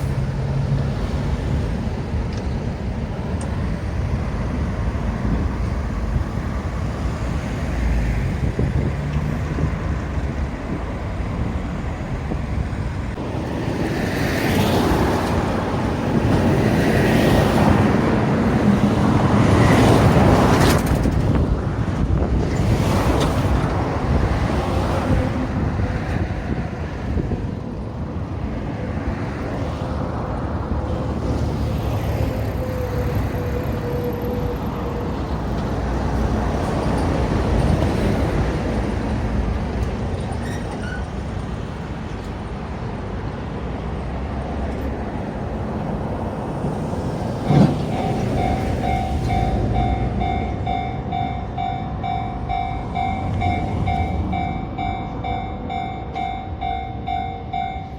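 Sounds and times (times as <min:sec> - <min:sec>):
level crossing warning bell: 0:47.2 - 0:57.9.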